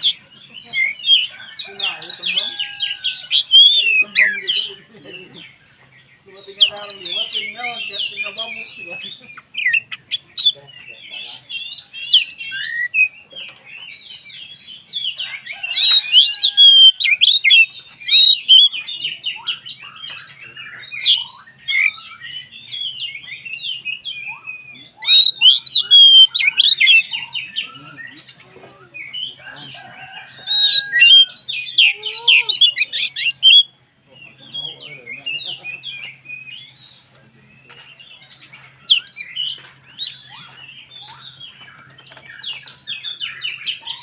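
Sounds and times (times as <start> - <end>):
quiet bird twittering: 0.0 - 44.0
bird singing whistled notes: 11.6 - 13.2, 15.8 - 28.3, 30.4 - 33.8, 34.6 - 44.0.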